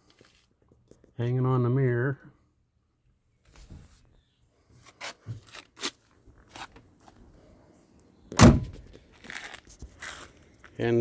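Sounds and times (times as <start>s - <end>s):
louder thump: 8.4s - 8.8s.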